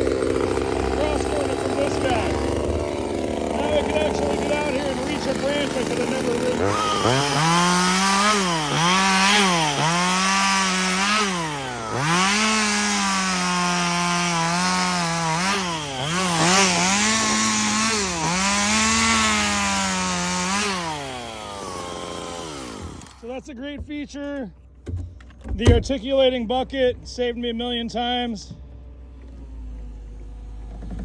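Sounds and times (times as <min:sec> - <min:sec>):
chainsaw cutting wood: 0:00.0 - 0:23.4.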